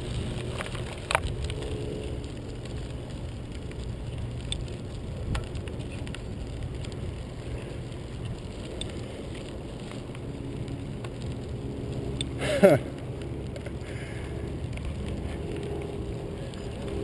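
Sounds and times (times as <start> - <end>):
wind buffeting microphone: 0.0 - 12.2
bicycle clicks and rattles: 0.0 - 17.0.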